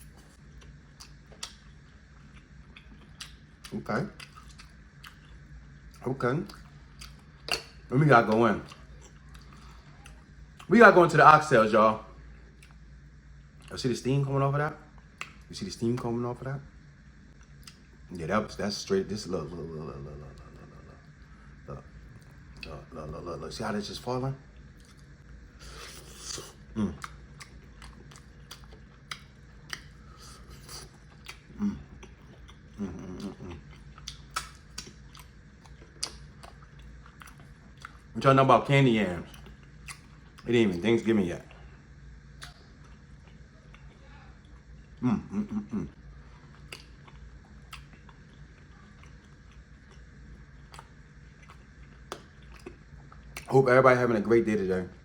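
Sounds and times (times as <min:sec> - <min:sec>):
person chewing food: 0:00.0 - 0:10.7, 0:12.3 - 0:13.7, 0:17.3 - 0:18.1, 0:24.5 - 0:38.2, 0:39.2 - 0:40.5, 0:41.4 - 0:53.5
wet mouth clicks and smacks: 0:01.0 - 0:01.7, 0:02.8 - 0:05.2, 0:15.2 - 0:15.5, 0:17.6 - 0:17.8, 0:26.3 - 0:29.9, 0:34.0 - 0:38.0, 0:42.4 - 0:43.9, 0:46.6 - 0:48.2, 0:50.7 - 0:53.5
low voice sound: 0:26.4 - 0:27.0, 0:32.8 - 0:33.6, 0:45.0 - 0:46.0.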